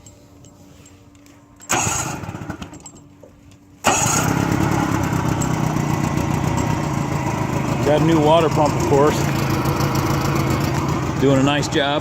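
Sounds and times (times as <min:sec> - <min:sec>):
outboard motor starting and running: 0:01.6 - 0:03.0, 0:03.8 - 0:12.0.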